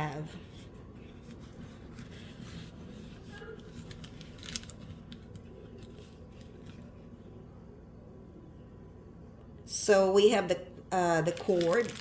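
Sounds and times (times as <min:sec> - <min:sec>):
packaging rustling: 0:00.4 - 0:07.0, 0:11.2 - 0:12.0.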